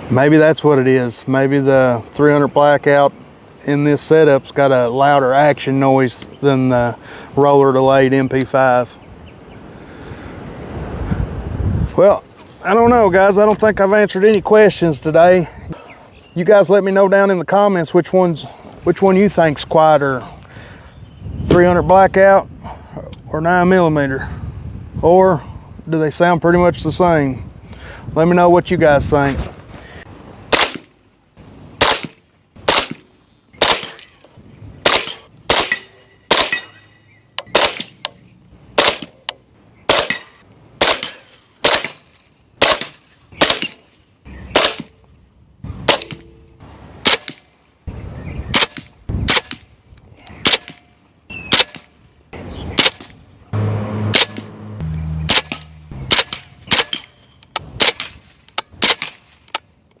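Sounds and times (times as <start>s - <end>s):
suppressed gunshots: 54.0s - 54.6s, 55.2s - 57.1s.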